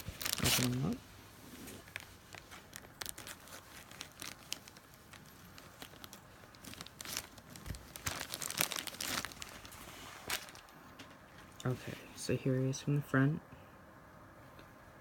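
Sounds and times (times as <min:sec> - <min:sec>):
packaging crinkling and tearing: 0:00.0 - 0:10.8.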